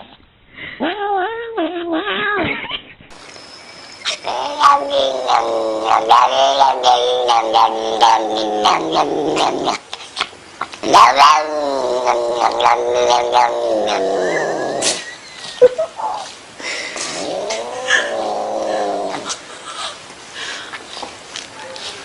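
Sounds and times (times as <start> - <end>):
cat yowling: 4.0 - 10.3, 10.9 - 15.0.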